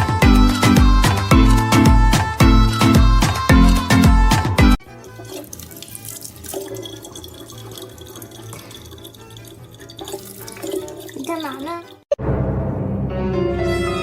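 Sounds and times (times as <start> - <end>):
water running from tap: 4.8 - 12.1.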